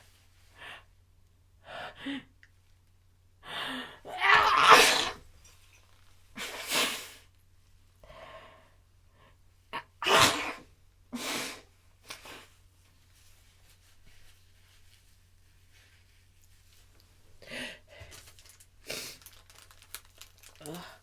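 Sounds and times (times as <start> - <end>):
person sneezing: 4.1 - 5.2, 9.8 - 11.6.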